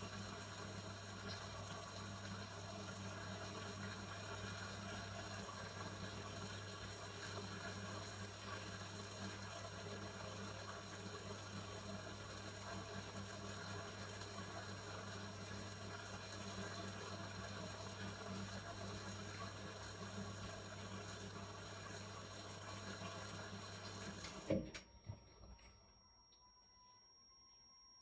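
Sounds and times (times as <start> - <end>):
washing machine running: 0.0 - 25.7.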